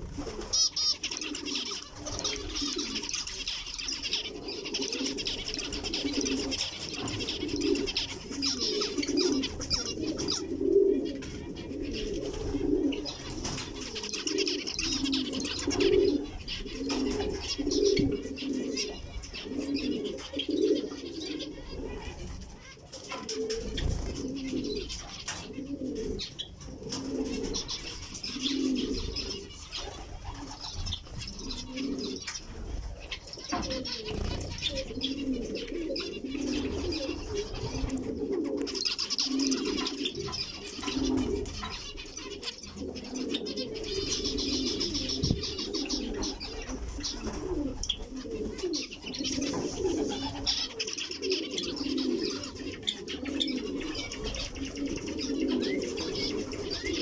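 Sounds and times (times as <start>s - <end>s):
repeated low bird calls: 0.0s - 57.0s
high bird chirping: 0.4s - 10.6s, 27.4s - 57.0s.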